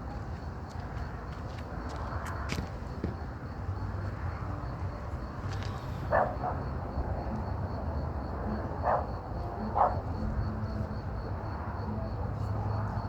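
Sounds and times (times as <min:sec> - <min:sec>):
dog barking: 0:06.1 - 0:06.6, 0:08.8 - 0:10.1.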